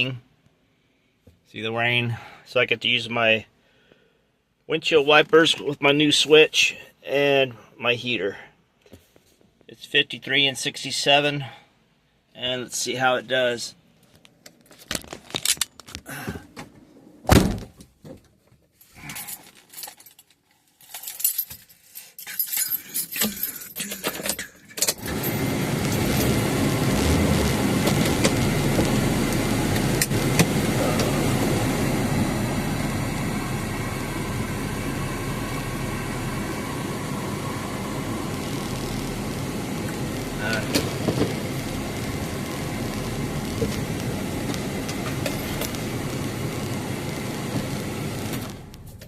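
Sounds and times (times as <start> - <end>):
keys jangling: 19.0 - 25.0
vehicle engine running: 25.0 - 49.0.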